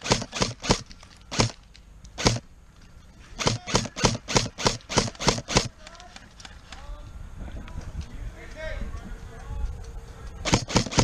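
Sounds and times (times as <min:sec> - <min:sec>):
airsoft gun shots: 0:00.0 - 0:01.6, 0:02.2 - 0:02.4, 0:03.4 - 0:05.7, 0:10.4 - 0:11.0.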